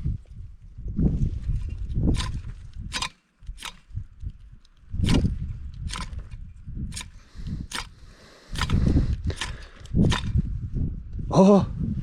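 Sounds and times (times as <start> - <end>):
ferro rod striking: 2.1 - 3.9.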